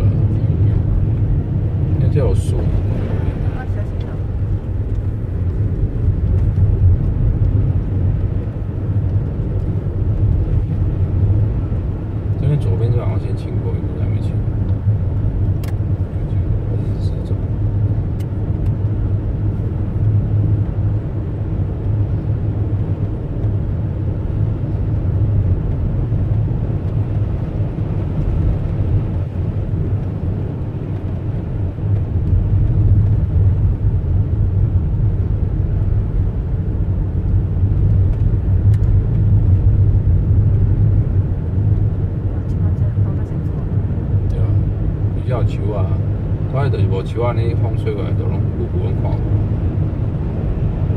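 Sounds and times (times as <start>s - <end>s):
car road and engine rumble: 0.0s - 50.9s.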